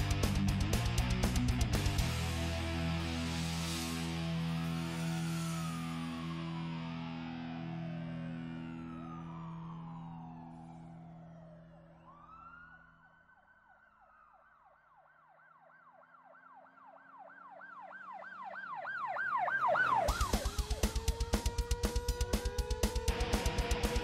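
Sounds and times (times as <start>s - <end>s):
fast driving drum beat: 0.0s - 2.3s, 20.0s - 24.0s
siren-like synth tone: 3.5s - 24.0s.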